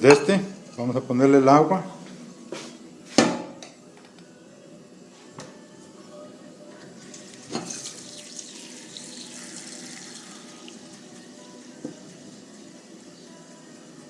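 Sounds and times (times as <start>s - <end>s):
water running into a pot: 7.3s - 11.2s.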